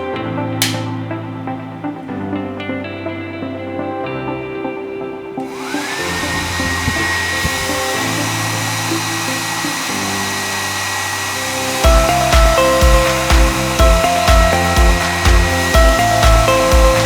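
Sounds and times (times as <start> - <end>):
background music: 0.0 - 17.0
hair dryer motor whine: 0.6 - 0.9, 5.4 - 17.0.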